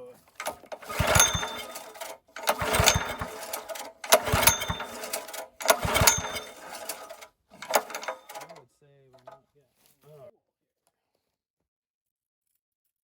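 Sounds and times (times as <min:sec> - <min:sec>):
engine turning over: 0:00.3 - 0:08.6
recoil starter pull whirring: 0:00.3 - 0:08.6.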